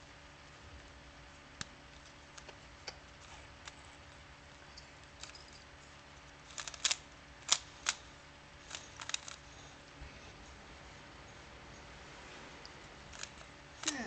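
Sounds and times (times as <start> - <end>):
plastic puzzle cube clicking: 6.5 - 8.0, 8.7 - 9.4.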